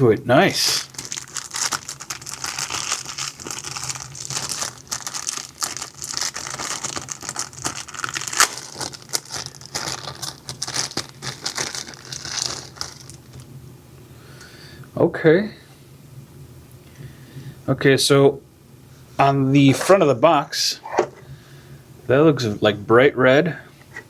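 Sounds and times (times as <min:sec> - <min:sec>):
packaging crinkling and rustling: 0:00.4 - 0:13.5.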